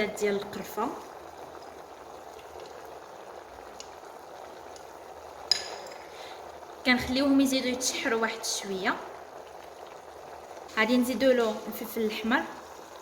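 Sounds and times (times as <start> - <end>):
meat sizzling in oil: 0.0 - 13.0
utensil clinking against pot: 5.5 - 6.2.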